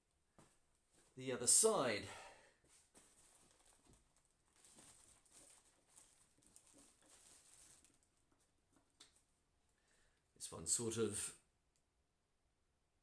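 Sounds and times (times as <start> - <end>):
small clicks and rustles: 2.6 - 9.4.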